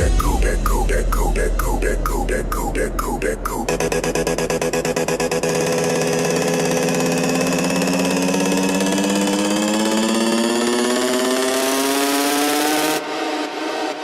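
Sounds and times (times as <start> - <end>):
sparse electronic hits: 0.0 - 7.4
buzzy synth tone rising: 0.0 - 14.0.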